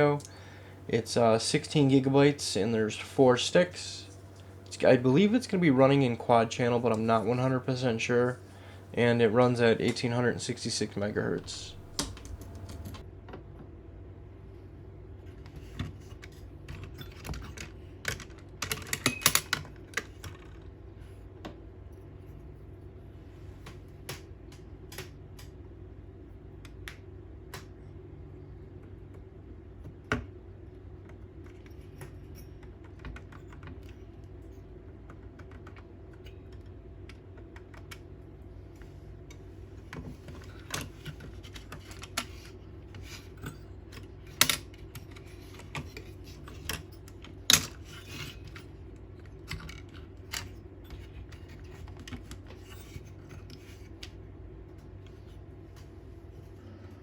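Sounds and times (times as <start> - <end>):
low hum: 0.0 - 13.0.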